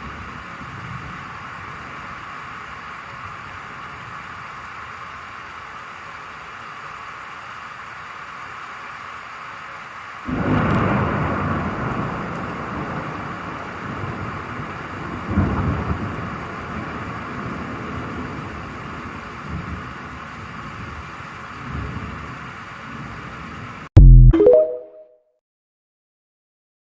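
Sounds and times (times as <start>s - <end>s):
rain hiss: 0.0s - 23.9s
loud thunder crack: 10.3s - 18.4s
thunderclap rumbling: 10.3s - 21.0s.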